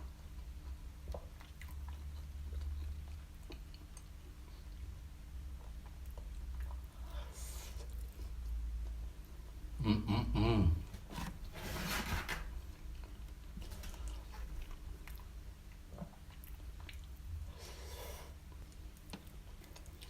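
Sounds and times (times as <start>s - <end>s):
chewing and biting food: 0.0s - 6.9s, 13.0s - 17.3s
person humming: 9.8s - 11.0s.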